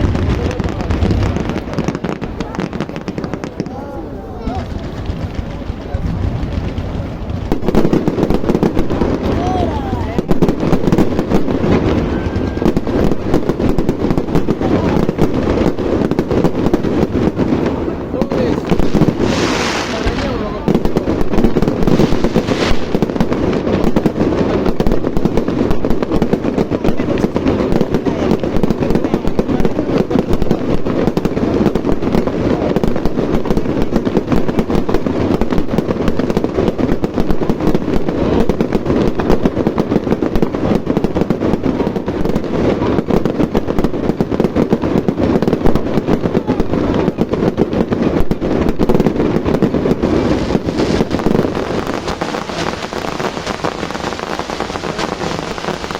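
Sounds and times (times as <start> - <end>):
fireworks bangs and crackles: 0.0 - 55.9.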